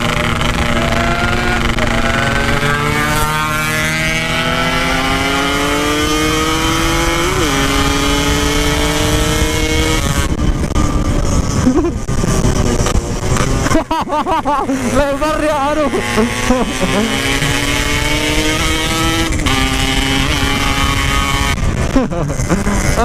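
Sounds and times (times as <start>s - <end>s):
motorcycle engine accelerating: 0.0s - 23.0s.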